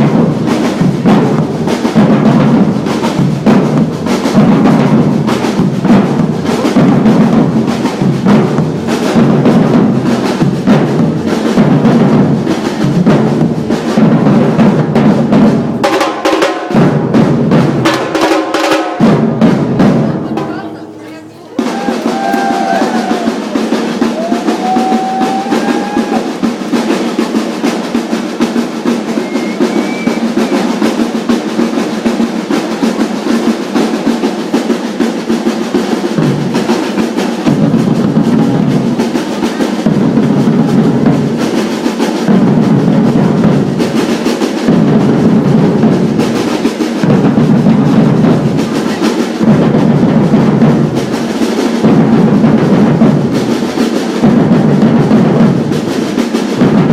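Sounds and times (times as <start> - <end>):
deep bass drums: 0.0 - 16.0, 37.4 - 39.2, 39.8 - 41.5, 42.2 - 44.0, 44.6 - 46.4, 47.0 - 51.1, 51.8 - 55.8
fast snare drum groove: 0.0 - 56.9.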